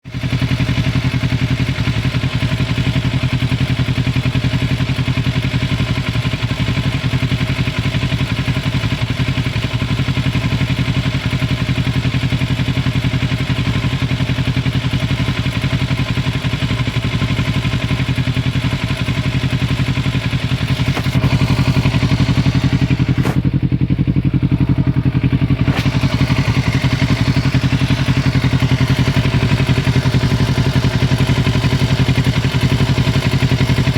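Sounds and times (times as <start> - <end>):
motorcycle engine idling: 0.0 - 33.9
rapid engine ticking: 0.0 - 33.9.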